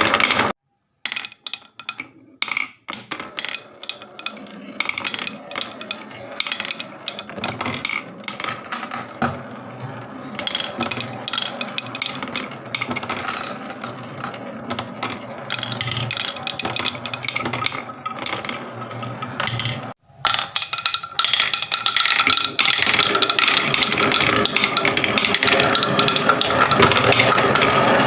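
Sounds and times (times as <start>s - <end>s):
marbles clattering down wooden run: 0.0s - 28.0s.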